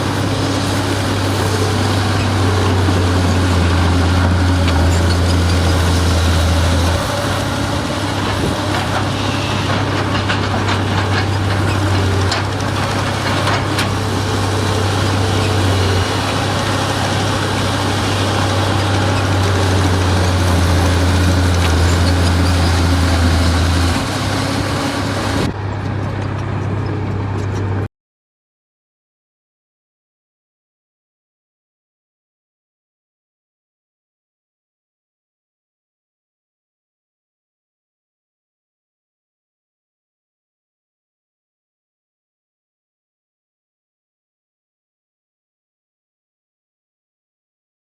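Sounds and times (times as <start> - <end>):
heavy diesel engine running: 0.0 - 27.9.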